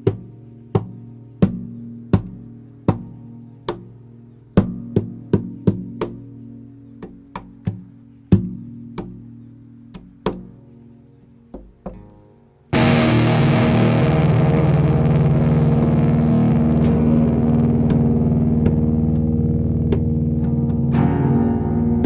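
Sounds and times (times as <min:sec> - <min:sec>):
plucked guitar notes: 0:12.7 - 0:22.0
loud distorted buzzing: 0:12.8 - 0:22.0
low drone: 0:12.8 - 0:22.0.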